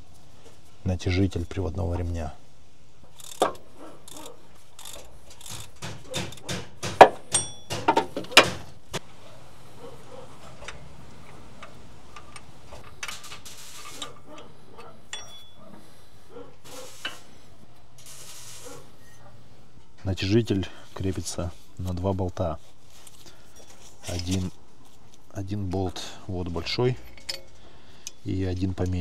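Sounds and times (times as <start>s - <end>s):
metal tools clicking and clanking: 3.1s - 8.6s, 12.2s - 15.7s, 27.0s - 28.2s.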